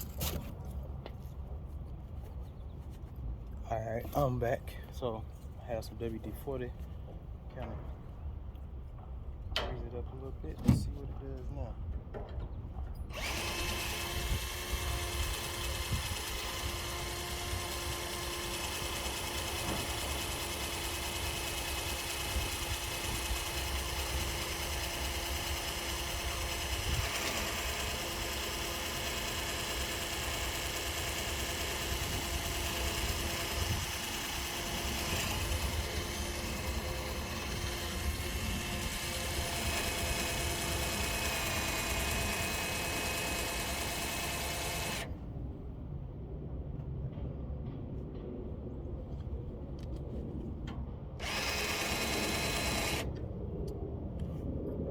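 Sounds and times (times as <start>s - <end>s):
electric drill on metal: 13.1s - 45.2s, 51.2s - 53.2s.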